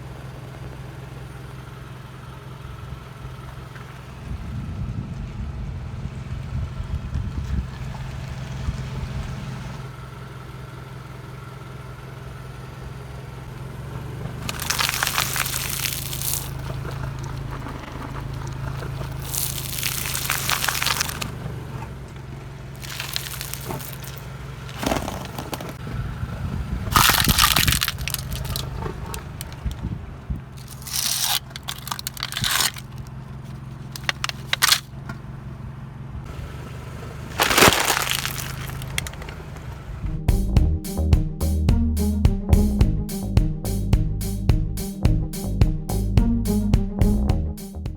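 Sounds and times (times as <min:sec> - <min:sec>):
car engine humming: 0:05.7 - 0:47.9
objects crunching under car tyres: 0:14.1 - 0:25.8, 0:26.8 - 0:35.4, 0:36.3 - 0:40.0.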